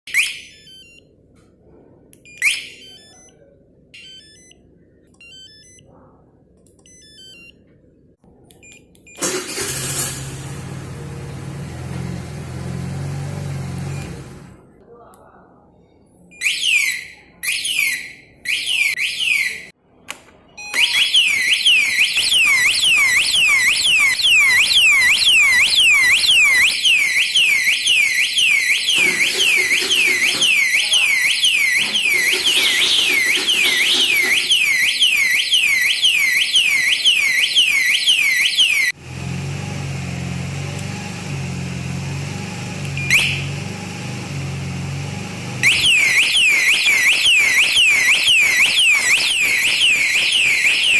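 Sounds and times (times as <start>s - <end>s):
motorcycle alarm siren: 5.2s - 5.9s, 9.1s - 10.8s, 20.6s - 39.0s, 42.1s - 50.9s.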